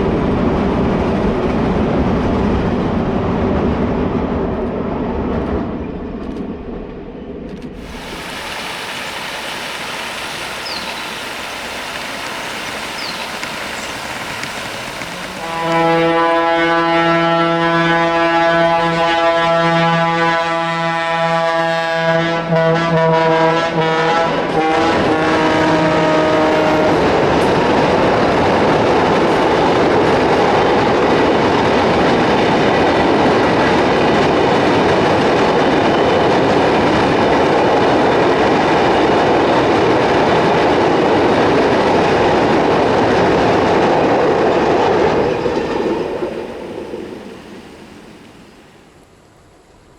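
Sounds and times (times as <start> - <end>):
train wheels on rails: 7.4 - 19.2, 24.3 - 49.9
train horn blast: 11.8 - 27.2.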